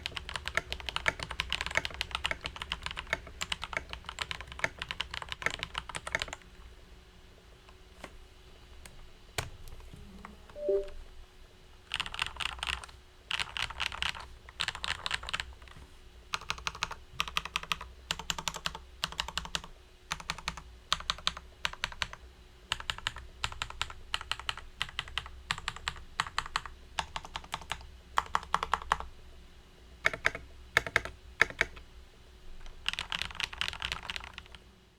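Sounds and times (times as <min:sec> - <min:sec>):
mechanical keyboard typing: 0:00.0 - 0:06.4, 0:11.9 - 0:15.7, 0:16.3 - 0:29.1, 0:30.0 - 0:31.9, 0:32.6 - 0:34.6.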